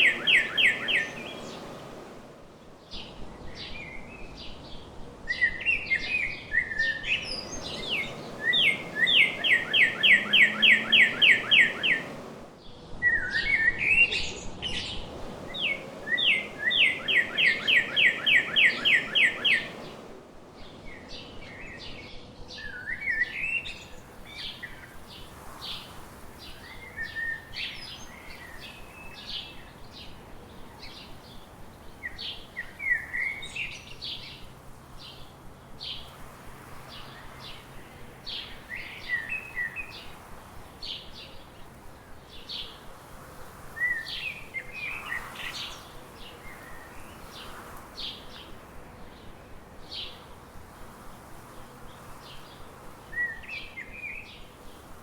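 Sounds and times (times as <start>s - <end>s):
bird rapid repeated song: 0.0s - 2.2s, 2.8s - 12.6s, 13.8s - 42.8s
songbirds chirping: 0.0s - 55.0s.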